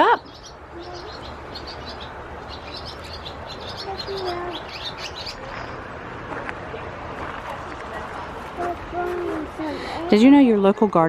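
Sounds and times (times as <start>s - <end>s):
small birds chirping: 0.0s - 5.9s
steady background hiss: 0.0s - 11.0s.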